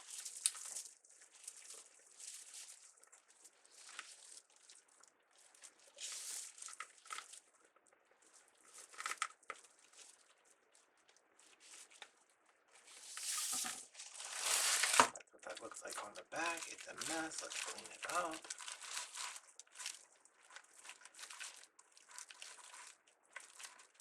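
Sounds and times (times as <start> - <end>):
mesh and pipe cleaners crinkling: 0.0 - 24.0.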